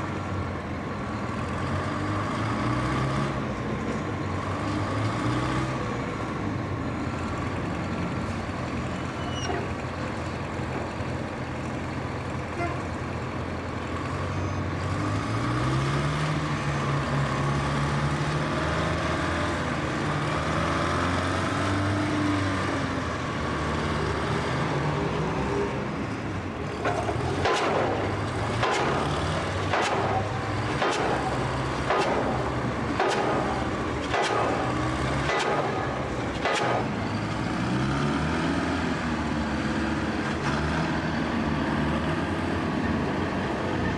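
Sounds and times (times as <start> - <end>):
engine running: 0.0 - 43.9
pile hammer banging: 26.8 - 37.0.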